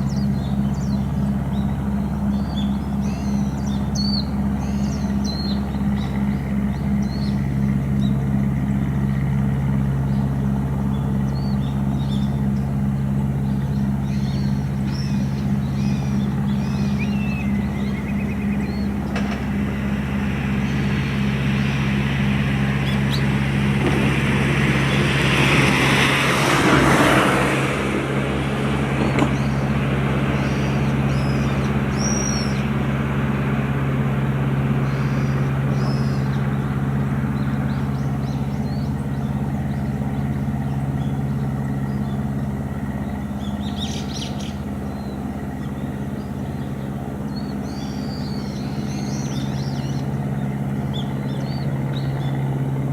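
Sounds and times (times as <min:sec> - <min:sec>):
birds chirping: 0:00.0 - 0:52.9
engine idling: 0:00.0 - 0:52.9
rushing noise: 0:18.8 - 0:33.4.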